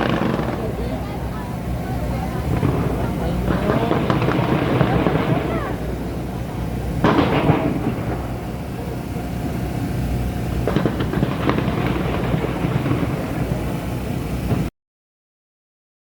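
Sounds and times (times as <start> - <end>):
distant fireworks bangs: 0.0 - 14.7
low background rumble: 0.0 - 14.7.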